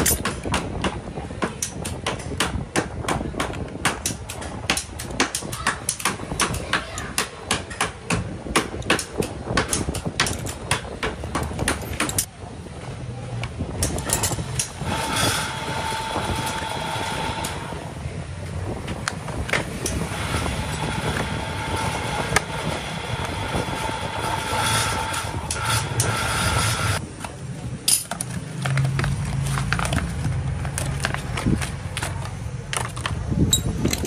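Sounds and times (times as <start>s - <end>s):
sharp clicks and metal knocks: 0.0s - 12.3s
workshop machinery humming: 13.8s - 33.7s.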